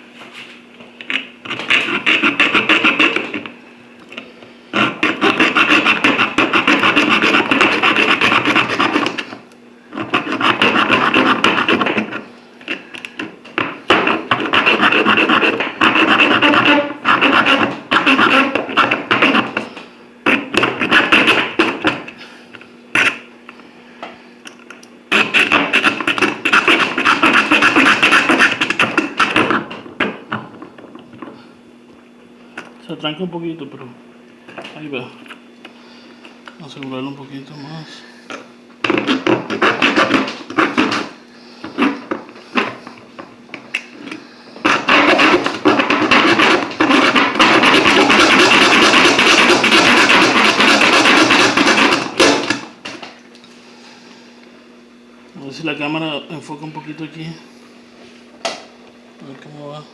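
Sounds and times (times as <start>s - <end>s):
saw blade rasping through metal: 4.8s - 9.2s, 10.0s - 12.2s, 13.9s - 19.6s, 25.1s - 29.6s, 44.6s - 52.6s.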